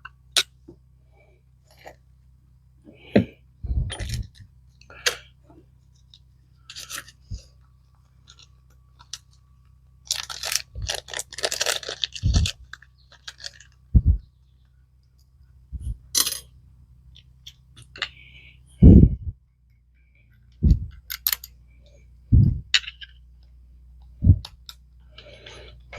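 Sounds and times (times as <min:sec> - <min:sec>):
small metal parts clicking: 0:03.9 - 0:04.4, 0:06.7 - 0:07.4, 0:10.1 - 0:13.8, 0:16.1 - 0:16.5, 0:20.9 - 0:21.6
scraping and rustling: 0:10.1 - 0:14.2.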